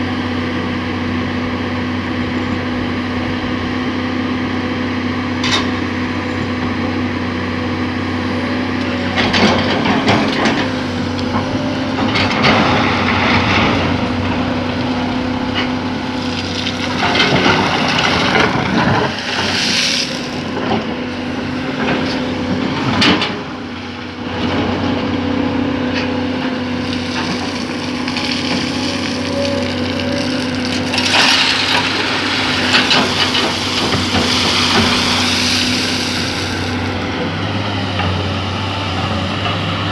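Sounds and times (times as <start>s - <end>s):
excavator diesel engine running: 0.0s - 39.9s.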